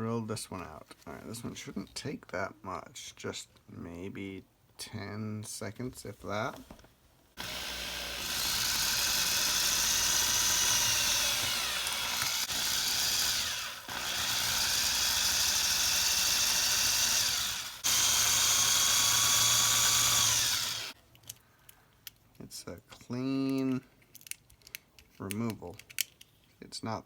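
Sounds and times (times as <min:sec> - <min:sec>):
power drill whining: 0:07.4 - 0:21.0.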